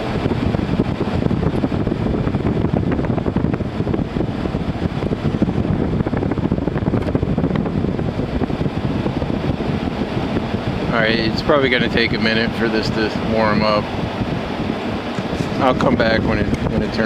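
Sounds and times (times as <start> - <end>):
air conditioner blower fan: 0.0 - 17.0.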